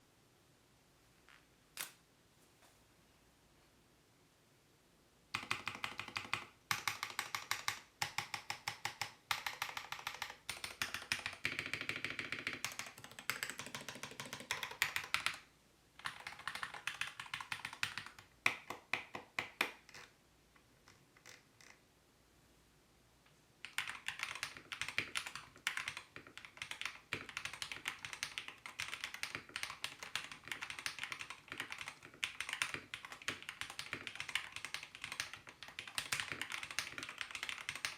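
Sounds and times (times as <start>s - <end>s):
mechanical keyboard typing: 5.4s - 15.4s, 16.0s - 20.1s, 23.6s - 37.9s.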